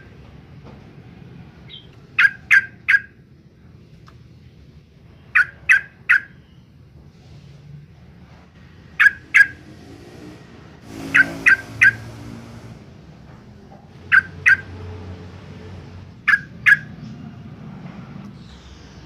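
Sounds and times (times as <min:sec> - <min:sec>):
bird calling sharp notes: 0:01.7 - 0:03.2, 0:05.3 - 0:06.6, 0:09.0 - 0:09.6, 0:10.8 - 0:12.3, 0:14.1 - 0:14.8, 0:16.2 - 0:17.0.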